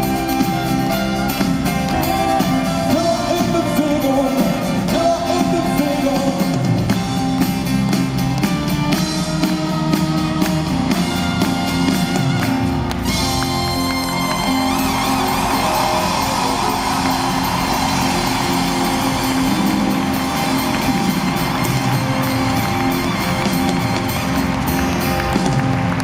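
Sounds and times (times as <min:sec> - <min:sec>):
acoustic rock band playing: 0:00.0 - 0:26.0
person singing: 0:01.6 - 0:06.7.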